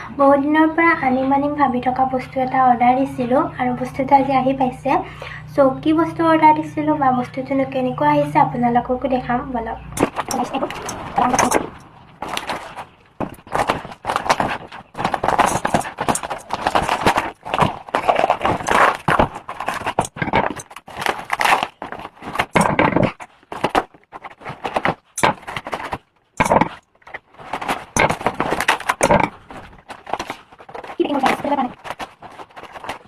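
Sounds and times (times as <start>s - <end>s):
packaging crinkling and rustling: 10.0s - 33.0s.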